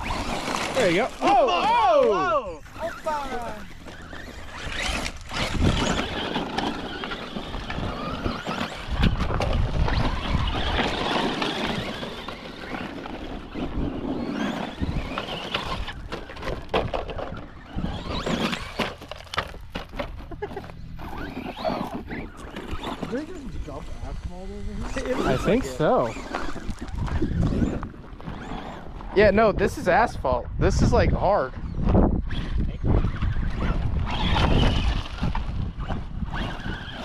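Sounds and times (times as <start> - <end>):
toy truck motor whine: 0.0 - 29.2, 31.6 - 37.0
tyres on gravel: 0.0 - 30.0, 31.6 - 37.0.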